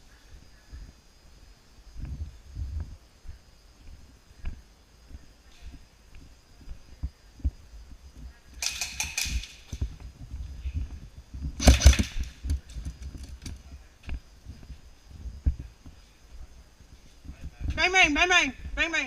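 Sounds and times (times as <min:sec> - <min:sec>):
sharp gun cracks: 0:08.6 - 0:09.8, 0:11.6 - 0:12.7
low thumps and knocks of movement: 0:09.0 - 0:16.0
airsoft gun bursts: 0:11.6 - 0:12.4.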